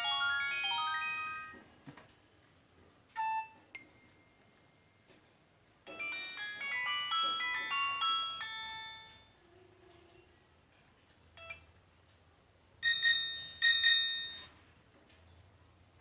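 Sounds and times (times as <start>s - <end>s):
bell-like chiming tones: 0.0s - 1.6s, 5.9s - 9.4s
synthesized ringtone melody: 0.0s - 1.6s, 5.9s - 9.4s.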